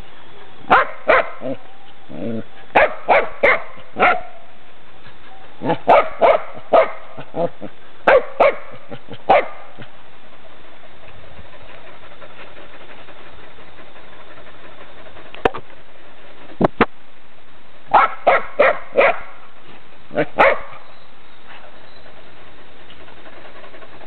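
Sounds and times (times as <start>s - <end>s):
steady hiss: 0.0s - 24.0s
dogs barking: 0.7s - 1.6s, 2.7s - 4.4s, 5.6s - 9.9s, 17.9s - 19.4s, 20.2s - 20.8s.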